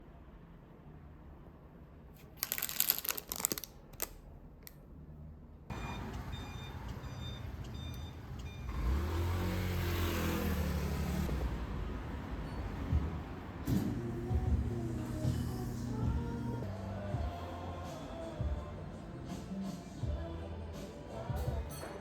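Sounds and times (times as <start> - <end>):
sharp clicks and rustles: 2.2 - 4.8
street ambience: 5.2 - 22.0
short electronic beeps: 5.7 - 9.1
vehicle engine accelerating: 5.8 - 17.0.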